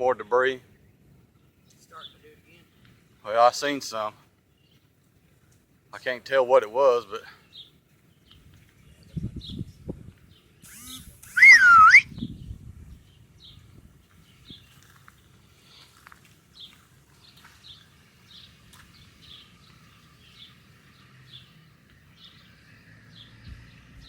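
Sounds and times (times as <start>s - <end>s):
bird chirping: 7.2s - 15.8s, 16.5s - 24.0s
low wind rumble: 7.7s - 10.6s, 11.6s - 15.5s, 17.7s - 24.0s.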